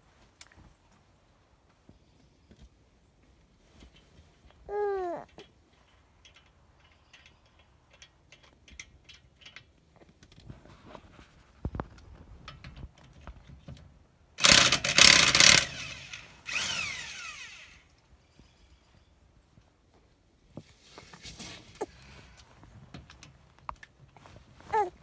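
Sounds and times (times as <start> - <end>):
impact wrench hammering: 14.4 - 17.2.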